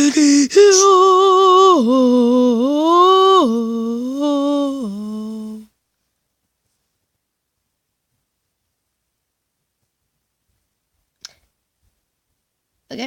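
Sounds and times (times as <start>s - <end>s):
person humming a tune: 0.0s - 5.7s.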